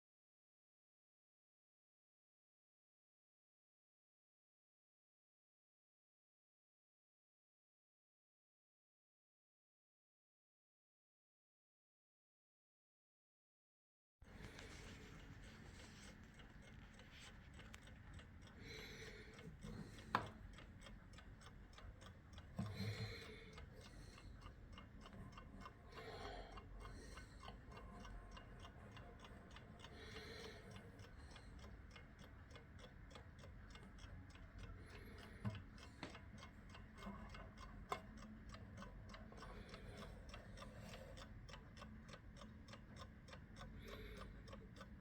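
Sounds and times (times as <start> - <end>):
alarm clock ticking: 14.4 - 45.0.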